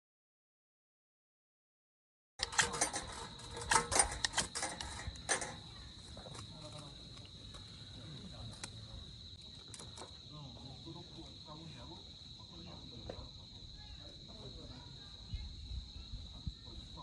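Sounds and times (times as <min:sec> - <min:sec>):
sharp clicks and cracks: 0:02.4 - 0:07.6, 0:08.5 - 0:08.8, 0:09.4 - 0:10.1
crickets chirring: 0:02.4 - 0:17.0.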